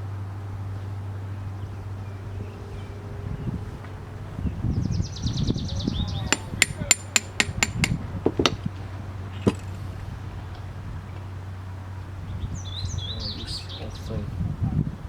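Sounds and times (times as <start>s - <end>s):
hammer tapping on metal: 6.3s - 8.7s, 9.4s - 9.8s.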